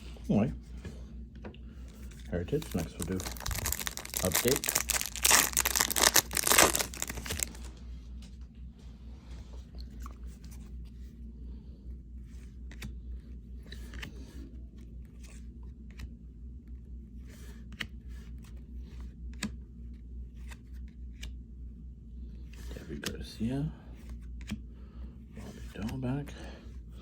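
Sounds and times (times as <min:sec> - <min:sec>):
cards and wrapper rustling: 0:01.9 - 0:07.7.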